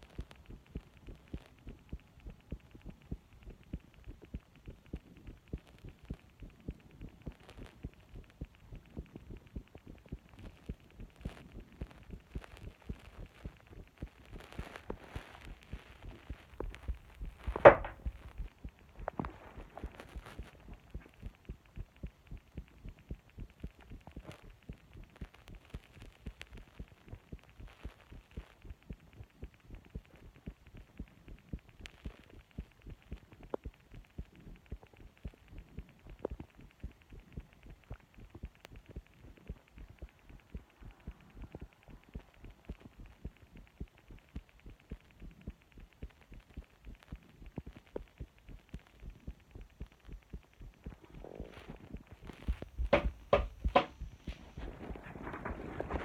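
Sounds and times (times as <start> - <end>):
heartbeat thumps: 0.0 - 56.0
sharp knock: 17.5 - 18.1, 52.8 - 54.0.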